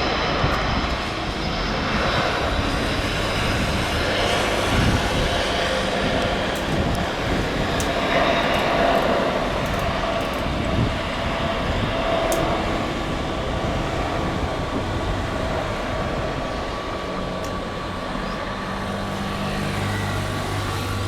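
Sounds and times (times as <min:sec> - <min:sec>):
jet engines rumbling with whine: 0:00.0 - 0:21.0.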